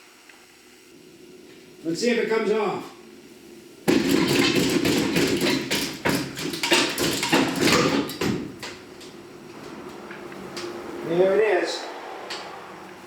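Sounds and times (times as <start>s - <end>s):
bumper knocking and rattling: 3.9s - 10.3s.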